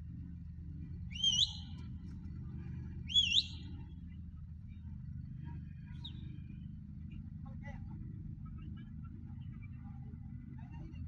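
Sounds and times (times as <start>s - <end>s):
low engine rumble: 0.0s - 11.0s
upward sweeping whistles: 1.1s - 1.7s, 3.1s - 3.6s.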